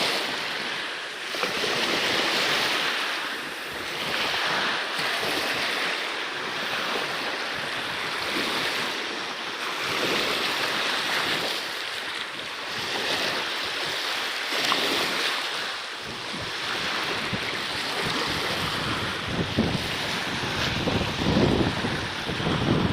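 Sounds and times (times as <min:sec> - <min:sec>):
water rushing and splashing: 0:00.0 - 0:22.9
wind buffeting microphone: 0:16.0 - 0:22.9.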